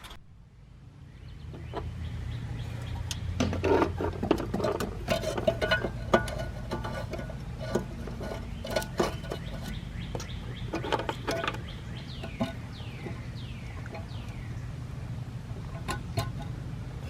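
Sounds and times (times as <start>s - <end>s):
low steady hum: 0.0s - 17.0s
bird chirping: 1.0s - 4.1s, 7.8s - 15.2s.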